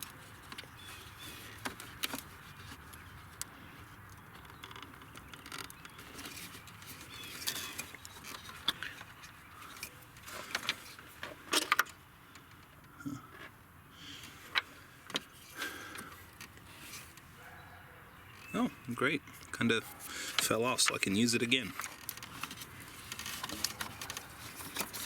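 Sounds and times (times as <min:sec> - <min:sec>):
plastic clips clicking and scraping: 0:19.4 - 0:25.0.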